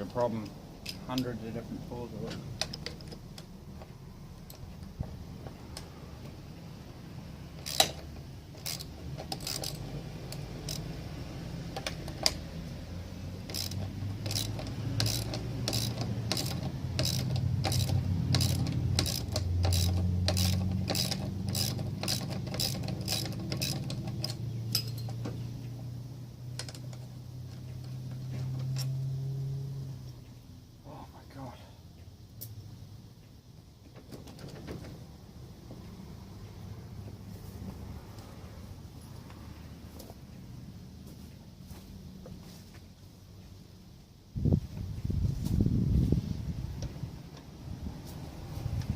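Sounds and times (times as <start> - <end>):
hand tool clicking on metal: 7.6 - 10.9, 13.4 - 25.2.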